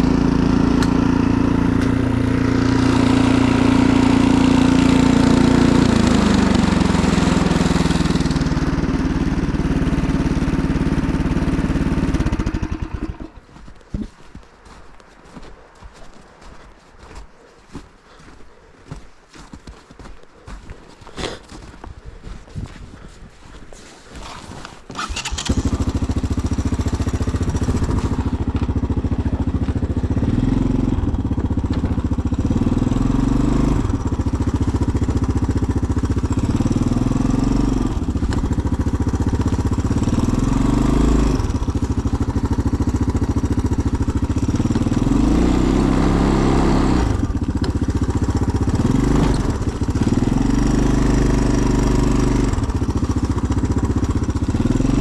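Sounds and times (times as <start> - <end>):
utility vehicle engine revving: 0.0 - 13.4, 24.9 - 55.0.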